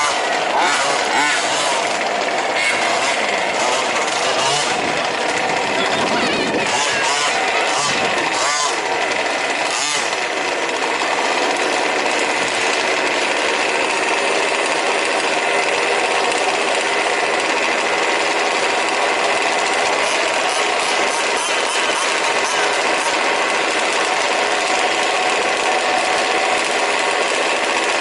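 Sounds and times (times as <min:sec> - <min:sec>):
small two-stroke engines buzzing: 0:00.0 - 0:28.0.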